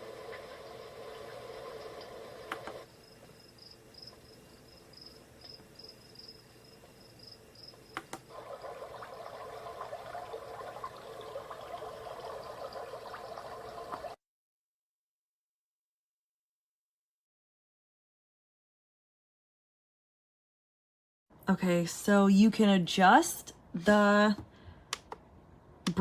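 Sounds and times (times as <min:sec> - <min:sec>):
running water: 0:00.0 - 0:02.9, 0:08.3 - 0:14.2
cricket-like chirping: 0:01.0 - 0:09.9
sharp clicks: 0:02.0 - 0:02.8, 0:07.9 - 0:08.2.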